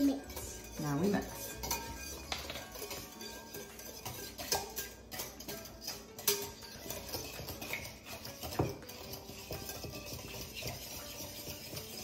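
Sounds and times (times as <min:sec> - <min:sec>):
utensil stirring liquid in bowl: 0:00.0 - 0:12.0
utensil knocking against bowl: 0:07.1 - 0:11.9.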